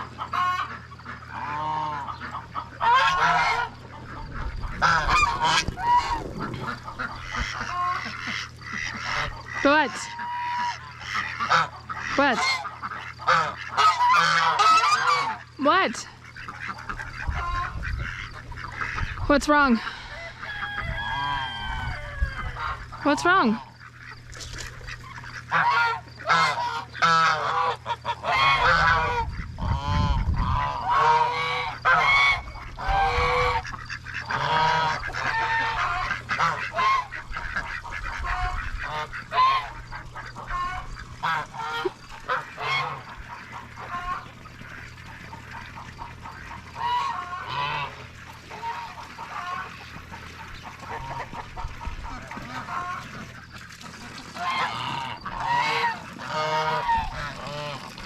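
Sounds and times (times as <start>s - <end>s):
geese honking: 0.0s - 58.0s.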